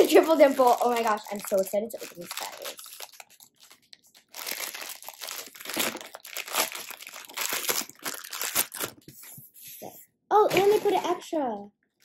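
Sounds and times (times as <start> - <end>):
packaging crinkling and rustling: 0.0 - 9.1.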